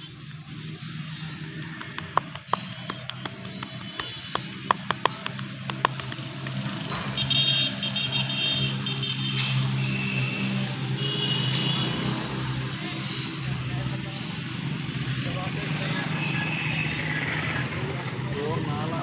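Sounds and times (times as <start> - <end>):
hands smacking back in massage: 1.4 - 6.3.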